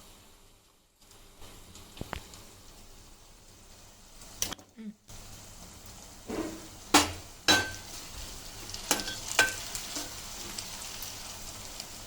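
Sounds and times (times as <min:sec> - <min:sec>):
onions sizzling in hot oil: 0:00.0 - 0:12.0
metal spoon knocking on pan: 0:06.4 - 0:07.9.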